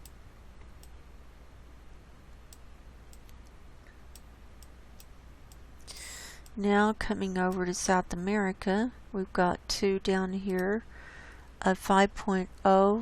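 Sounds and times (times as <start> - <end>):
room hiss: 0.0 - 8.0
low electrical hum: 0.0 - 13.0
computer mouse clicks: 2.5 - 6.6.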